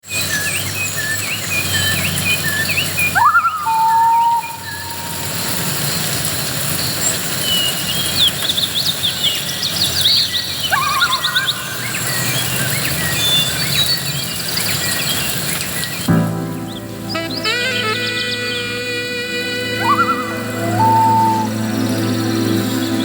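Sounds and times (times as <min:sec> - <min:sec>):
birds chirping: 0:00.0 - 0:23.0
outdoor background hiss: 0:00.1 - 0:23.0
music: 0:16.1 - 0:23.0.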